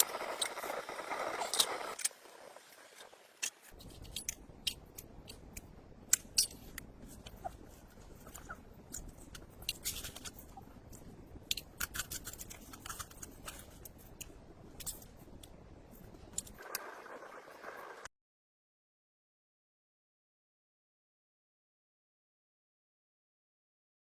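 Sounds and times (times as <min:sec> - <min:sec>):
campfire crackling: 0:00.0 - 0:03.8.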